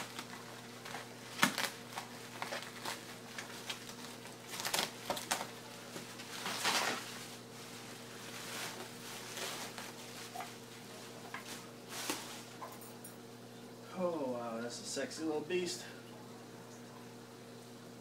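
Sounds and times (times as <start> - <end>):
packaging rustling and clicking: 0.0 - 7.1
steady low hum: 0.0 - 18.0.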